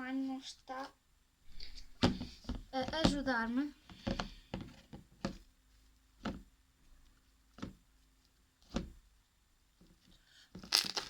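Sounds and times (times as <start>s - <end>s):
slime popping: 10.6s - 11.0s.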